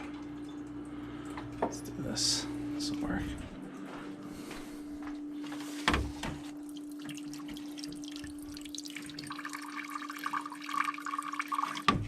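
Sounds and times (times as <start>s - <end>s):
water dripping from pipe: 0.0s - 1.7s, 6.5s - 12.0s.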